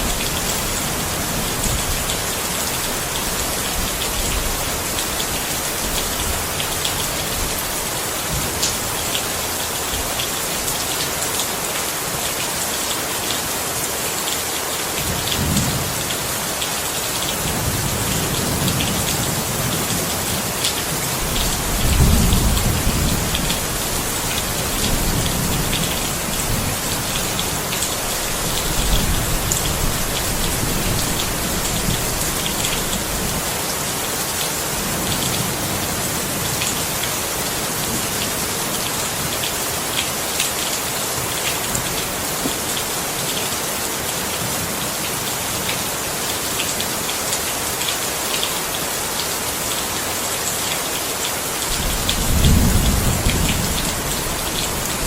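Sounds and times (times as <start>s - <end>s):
heavy rain falling: 0.0s - 55.0s
thunder rumbling: 21.3s - 27.5s, 51.7s - 55.0s.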